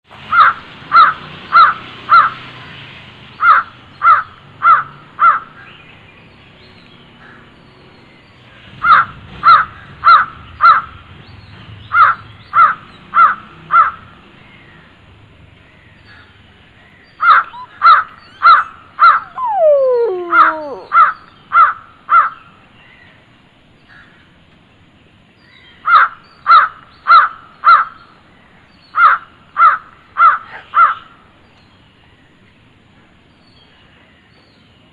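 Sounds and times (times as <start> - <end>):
bird harsh calls: 16.9 - 21.7
long falling sliding note: 19.2 - 20.9.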